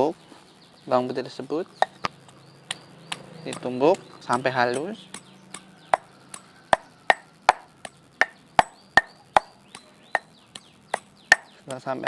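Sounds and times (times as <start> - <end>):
pestle pounding in a mortar: 3.5 - 11.6.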